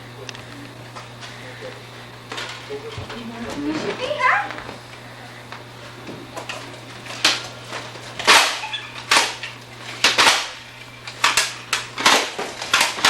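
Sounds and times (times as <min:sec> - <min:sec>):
low electrical hum: 0:00.0 - 0:13.0
foam blaster pops: 0:08.2 - 0:09.4, 0:10.0 - 0:10.6, 0:11.2 - 0:13.0.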